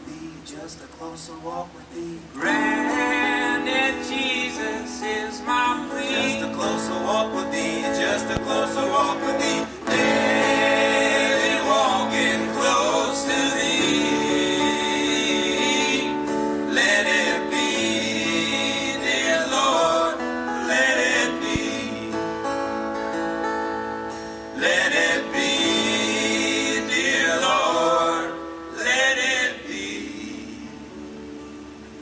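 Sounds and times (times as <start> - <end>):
person singing: 2.0 - 22.3
acoustic string band playing: 4.9 - 29.0.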